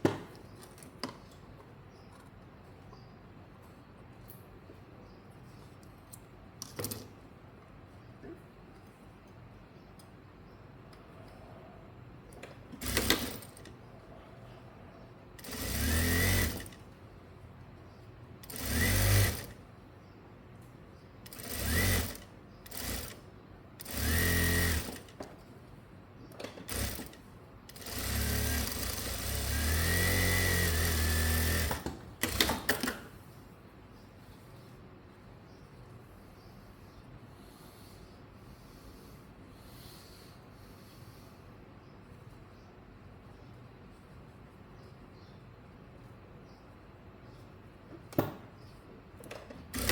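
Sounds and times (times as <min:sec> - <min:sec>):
sewing machine stitching: 0:12.8 - 0:13.7, 0:15.4 - 0:16.8, 0:18.4 - 0:19.6, 0:21.2 - 0:23.2, 0:23.8 - 0:25.2, 0:26.6 - 0:33.1, 0:49.7 - 0:49.9.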